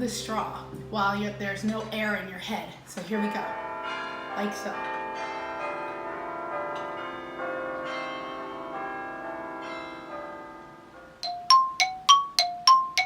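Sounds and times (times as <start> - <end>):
bells ringing: 3.1 - 13.0.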